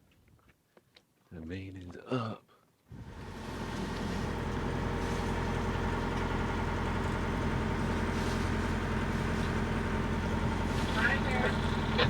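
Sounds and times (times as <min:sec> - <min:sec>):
boat engine droning: 0:03.0 - 0:12.0.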